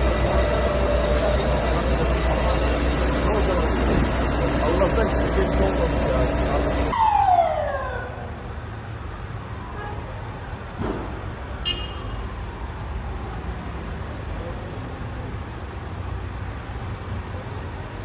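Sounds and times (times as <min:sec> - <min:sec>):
vehicle engines idling: 0:00.0 - 0:09.7.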